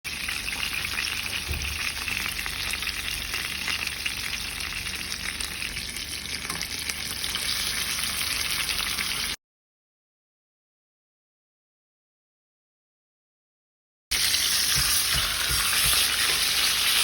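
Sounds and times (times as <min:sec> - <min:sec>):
fish frying in hot oil: 0:00.1 - 0:09.4, 0:14.1 - 0:17.0.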